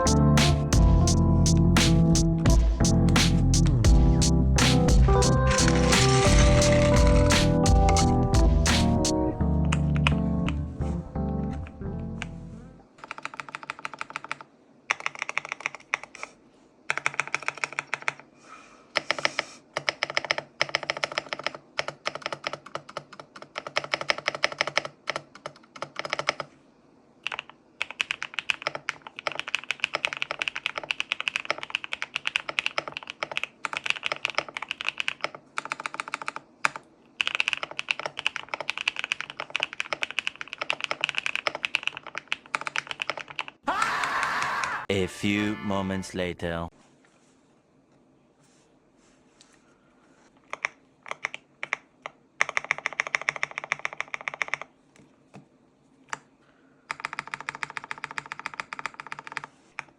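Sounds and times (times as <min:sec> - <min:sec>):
mechanical keyboard typing: 0:04.7 - 0:08.3, 0:08.9 - 0:10.6, 0:13.0 - 0:16.2, 0:16.9 - 0:18.2, 0:19.0 - 0:26.5, 0:27.2 - 0:43.6, 0:50.4 - 0:54.7, 0:56.9 - 0:59.9.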